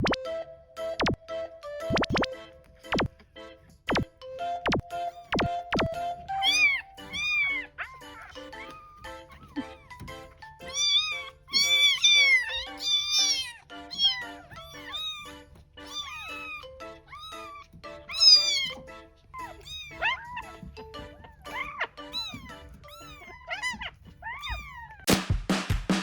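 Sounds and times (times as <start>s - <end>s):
light background music: 0.0s - 25.6s
kittens meowing: 4.8s - 25.1s.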